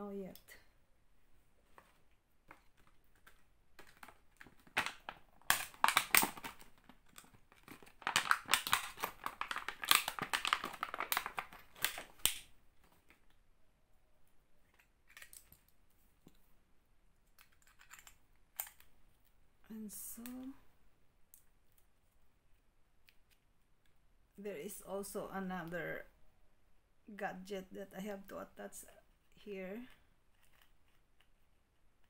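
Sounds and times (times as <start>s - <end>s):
plastic packaging crinkling: 2.6s - 12.5s
small plastic clicks and rattles: 14.7s - 16.4s, 17.2s - 18.9s.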